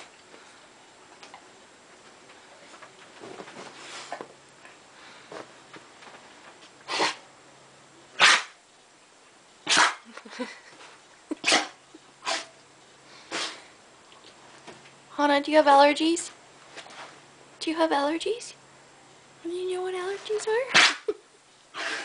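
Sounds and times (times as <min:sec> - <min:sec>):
pet sneezing: 0:06.9 - 0:07.2, 0:08.2 - 0:08.6, 0:09.7 - 0:10.1, 0:11.3 - 0:12.6, 0:13.3 - 0:13.7, 0:20.7 - 0:22.0.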